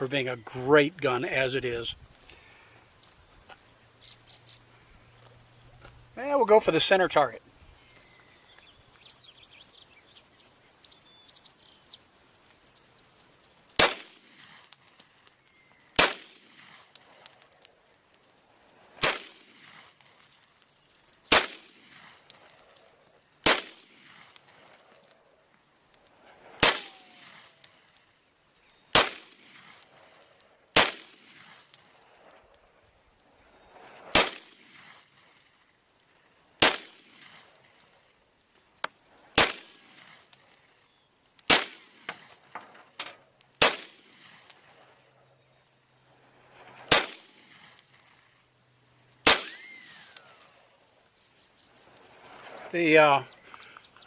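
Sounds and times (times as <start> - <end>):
pistol shots with echo: 13.8 - 14.6, 16.0 - 16.8, 19.0 - 19.8, 21.3 - 22.2, 23.4 - 24.2, 26.6 - 27.5, 28.9 - 29.8, 30.8 - 31.6, 34.1 - 34.9, 36.6 - 37.4, 39.4 - 40.1, 41.5 - 42.0, 43.6 - 44.4, 46.9 - 47.6, 49.2 - 49.8.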